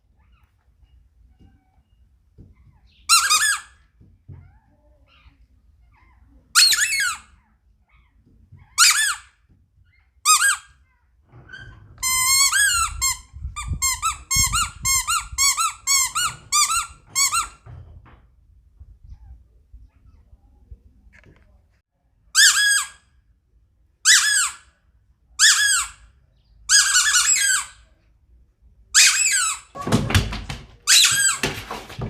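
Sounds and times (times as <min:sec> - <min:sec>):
squeaky toy ball squeaking: 0:02.6 - 0:04.5, 0:06.6 - 0:07.4, 0:08.6 - 0:10.8, 0:11.5 - 0:17.7, 0:22.4 - 0:23.1, 0:24.0 - 0:24.7, 0:25.4 - 0:26.0, 0:26.7 - 0:27.8, 0:29.0 - 0:30.2, 0:30.8 - 0:31.8.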